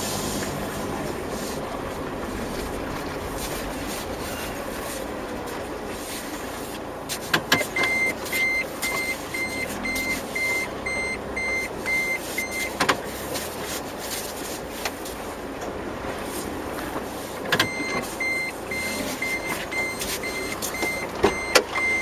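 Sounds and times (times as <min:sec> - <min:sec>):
car engine running: 0:00.0 - 0:22.0
reversing warning beeps: 0:07.5 - 0:12.8, 0:17.6 - 0:22.0.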